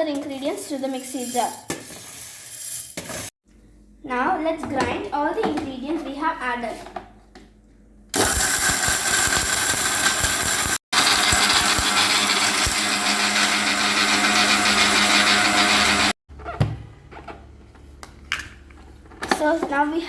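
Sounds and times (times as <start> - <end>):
mixer grinder grinding spices: 8.2 - 16.1.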